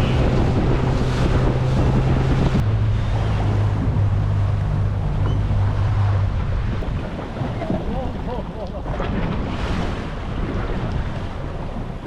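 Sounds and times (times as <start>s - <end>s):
boat engine humming: 0.0s - 12.0s
water around hull: 0.0s - 12.0s
wind buffeting microphone: 0.0s - 12.0s.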